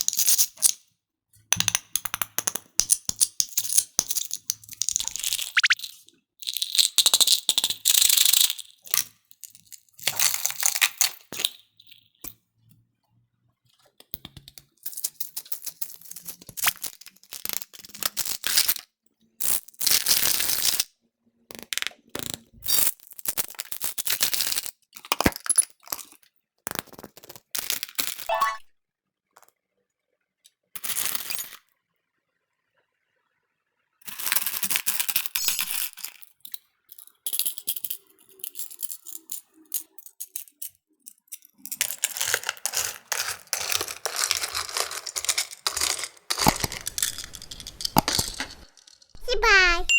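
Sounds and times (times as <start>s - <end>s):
hard candies rattling: 41.3s - 49.2s.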